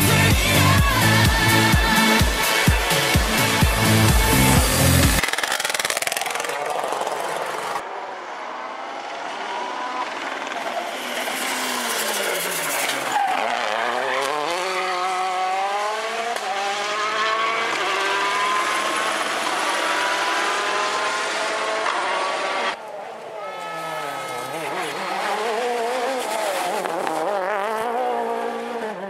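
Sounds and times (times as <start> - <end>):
rally car engine revving: 0.0 - 7.8, 8.8 - 29.0.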